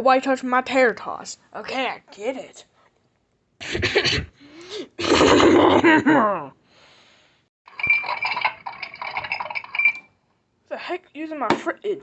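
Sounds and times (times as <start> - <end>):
rattling and clattering: 7.7 - 10.1.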